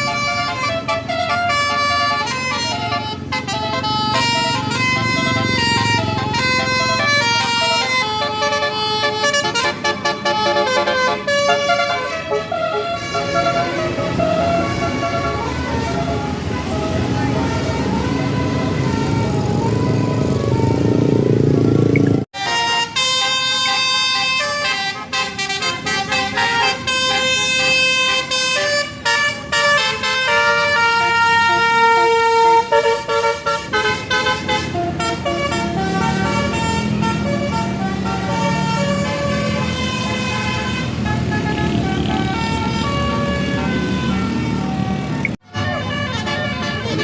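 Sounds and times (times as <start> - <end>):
musical air horn melody: 0.0 - 21.3, 22.3 - 47.0
bus engine running: 0.0 - 47.0.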